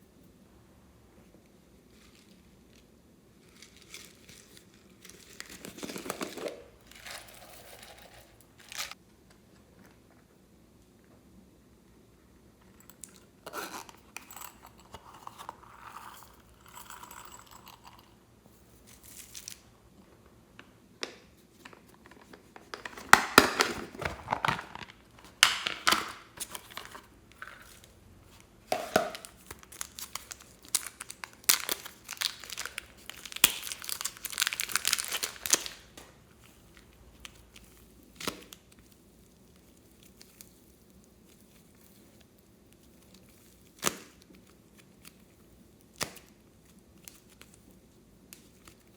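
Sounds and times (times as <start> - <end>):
slime crackling and popping: 29.2 - 36.1.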